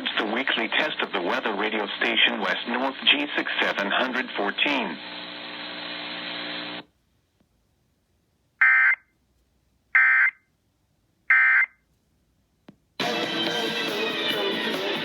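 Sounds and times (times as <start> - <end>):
music: 13.0 - 15.0.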